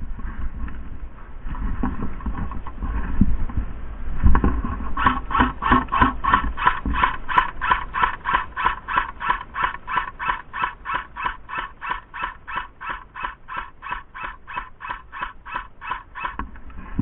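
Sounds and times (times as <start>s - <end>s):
pulsing alarm squawks: 5.0s - 16.4s.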